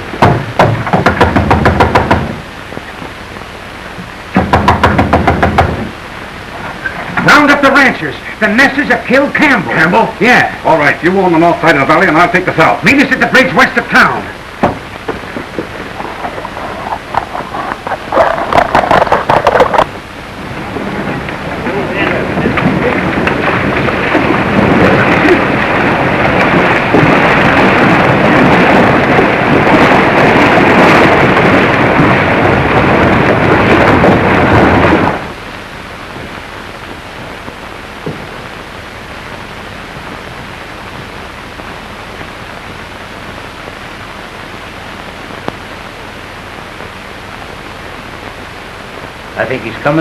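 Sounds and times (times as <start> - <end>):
horses galloping: 0.0 - 3.2, 12.8 - 35.4
soundtrack hiss: 0.0 - 50.0.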